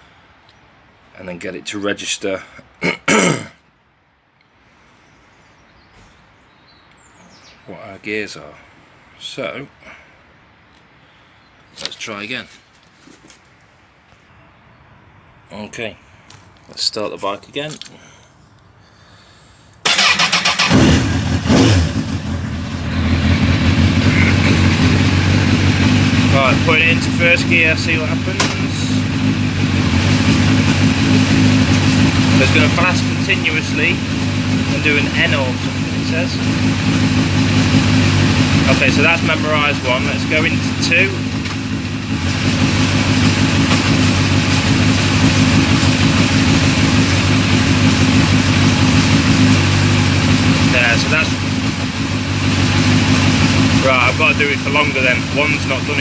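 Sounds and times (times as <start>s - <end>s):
motorcycle engine starting and idling: 19.8s - 56.0s.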